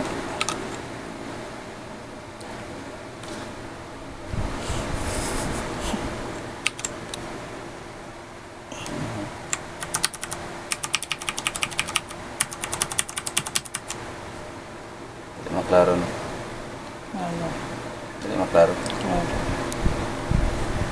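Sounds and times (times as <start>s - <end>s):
mechanical keyboard typing: 0.0s - 0.7s, 6.6s - 7.0s, 9.5s - 14.0s.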